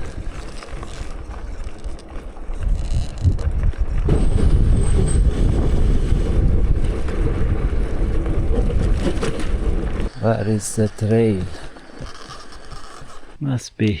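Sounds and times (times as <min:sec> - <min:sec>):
bicycle rumbling over dirt trail: 0:00.0 - 0:13.4
wind buffeting microphone: 0:00.0 - 0:13.4.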